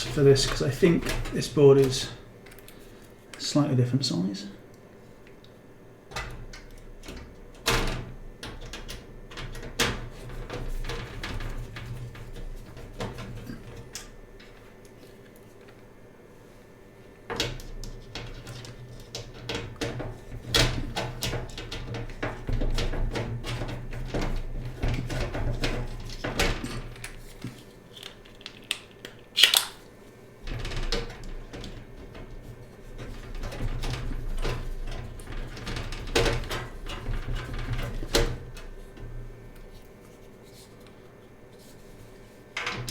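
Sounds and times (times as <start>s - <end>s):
metal parts clicking and knocking: 26.2s - 29.8s
small screws being handled: 27.6s - 29.8s
sharp loud click: 29.4s - 29.8s.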